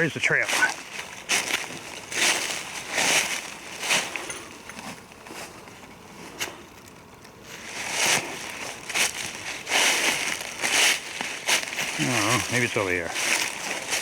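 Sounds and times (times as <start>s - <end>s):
footsteps crunching dry leaves: 0.0s - 6.6s, 7.4s - 14.0s.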